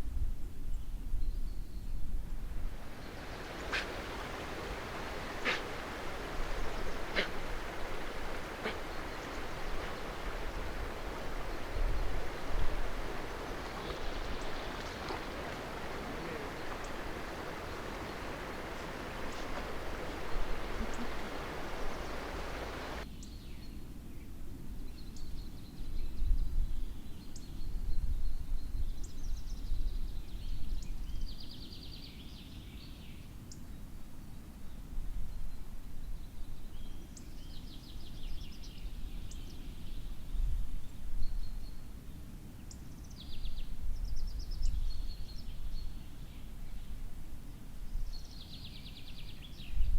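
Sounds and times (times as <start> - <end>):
small birds chirping and trilling: 2.9 - 23.0.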